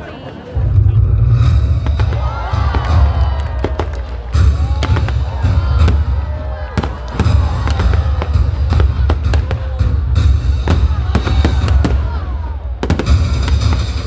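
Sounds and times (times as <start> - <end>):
music playing: 0.4 - 14.0
low rumble: 0.6 - 6.3
fireworks bursting: 1.4 - 14.0.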